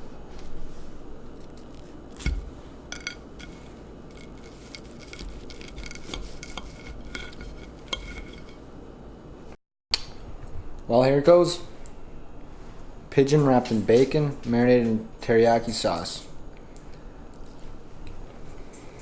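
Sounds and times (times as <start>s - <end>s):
cutlery scraping a dish: 2.2s - 8.6s
sharp cutlery clink: 2.2s - 8.6s.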